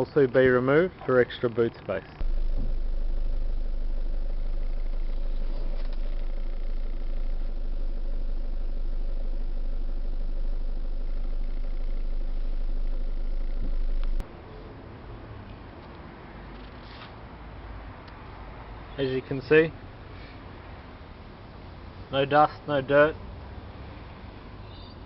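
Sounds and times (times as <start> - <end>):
diesel engine idling: 2.2 - 14.2.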